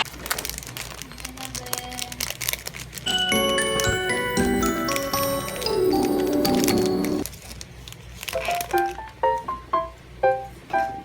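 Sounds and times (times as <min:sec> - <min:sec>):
melody of short ringing notes: 0:03.1 - 0:07.2.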